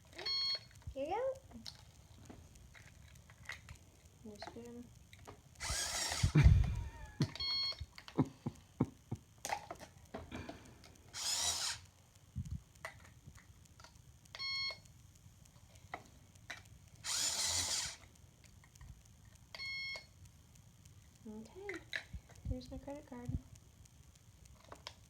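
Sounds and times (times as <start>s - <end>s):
toy whirring hissing noise: 0.1s - 8.3s, 9.5s - 13.2s, 15.6s - 18.2s
short electronic beeps: 7.4s - 7.8s.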